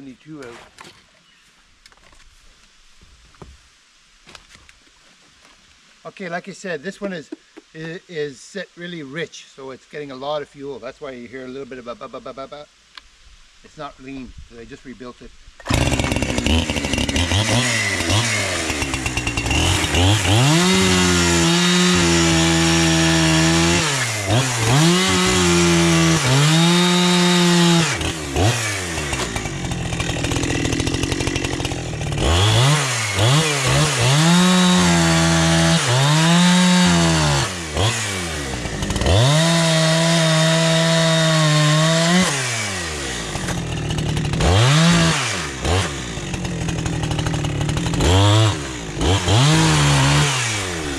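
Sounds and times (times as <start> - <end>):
chainsaw revving: 15.6 - 50.9.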